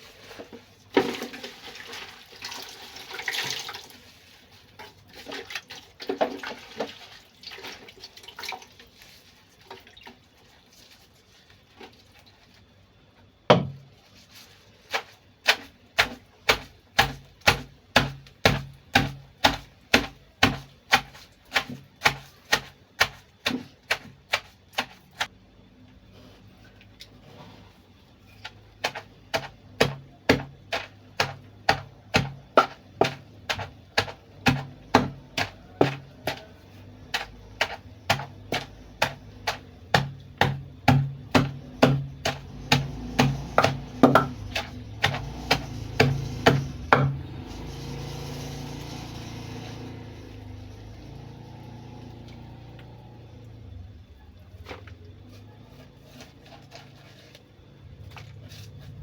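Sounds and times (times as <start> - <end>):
pestle pounding in mortar: 14.9 - 25.3, 28.8 - 47.2.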